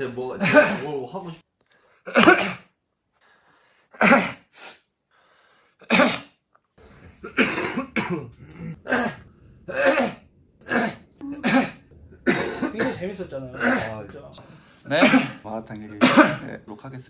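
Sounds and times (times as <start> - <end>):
man coughing: 2.1 - 2.7, 5.9 - 6.3, 7.2 - 13.1, 14.9 - 16.6.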